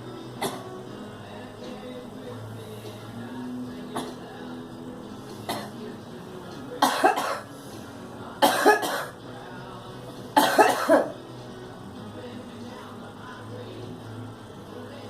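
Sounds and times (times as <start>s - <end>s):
girl coughing: 6.8s - 7.5s, 8.4s - 9.2s, 10.4s - 11.1s.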